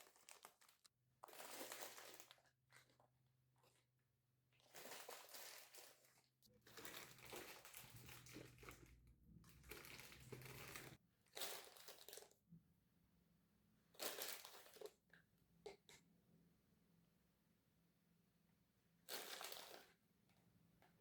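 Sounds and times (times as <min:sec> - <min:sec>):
faint crinkling and rustling: 0:00.0 - 0:12.4.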